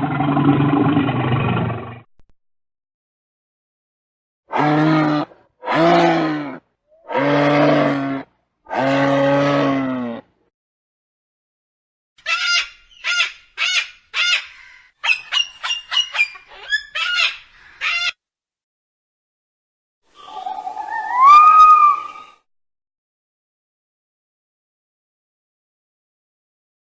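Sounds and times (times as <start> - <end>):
long drawn-out animal calls: 4.5 - 10.3, 20.1 - 22.4.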